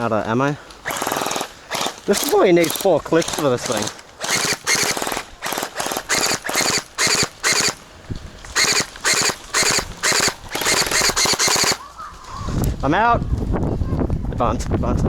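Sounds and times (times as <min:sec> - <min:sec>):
gel blaster firing bursts: 0:00.8 - 0:07.8, 0:08.6 - 0:11.8.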